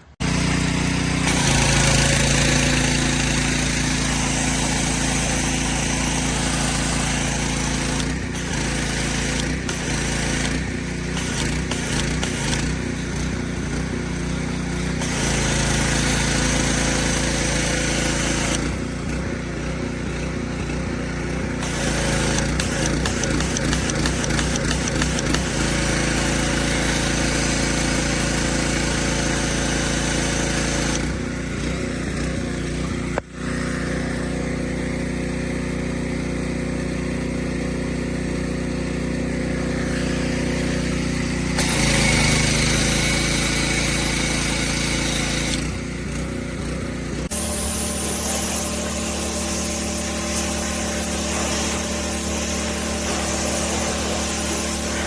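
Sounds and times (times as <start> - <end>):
pressure washer hissing: 0.2 - 19.2, 21.3 - 31.5, 39.5 - 46.2, 47.3 - 55.0.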